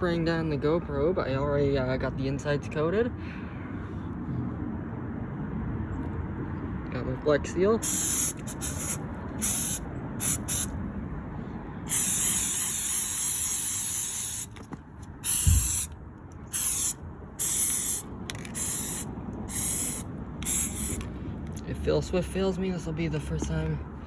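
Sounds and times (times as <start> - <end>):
aerosol can spraying: 7.8 - 10.7, 11.9 - 15.9, 16.5 - 21.0
steady low rumble: 7.9 - 24.0.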